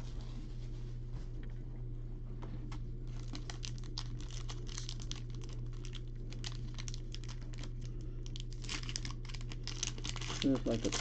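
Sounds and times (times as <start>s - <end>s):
steady low hum: 0.0s - 11.0s
wrappers crinkling and tearing: 3.1s - 11.0s.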